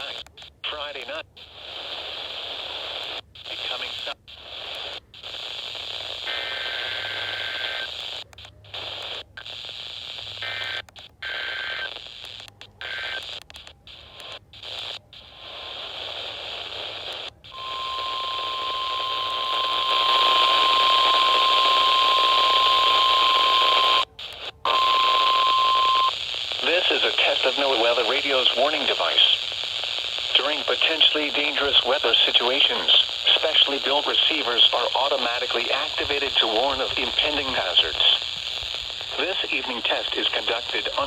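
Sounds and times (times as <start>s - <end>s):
radio static: 0.0s - 41.0s
steady warning alarm tone: 17.5s - 24.0s.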